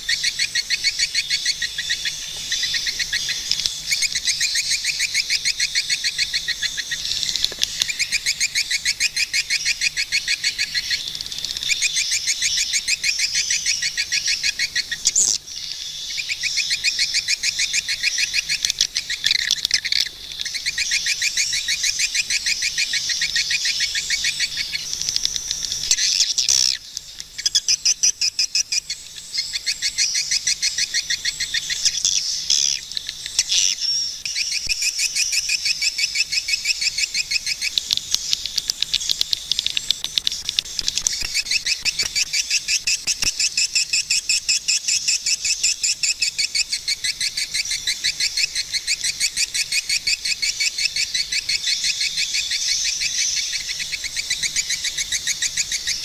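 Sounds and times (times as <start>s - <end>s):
swiftlets chirping: 37.3s - 44.0s.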